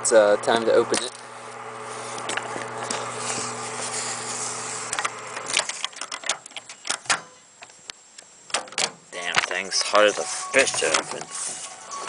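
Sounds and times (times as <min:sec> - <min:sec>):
microwave oven humming: 0:00.0 - 0:06.1, 0:09.6 - 0:12.0.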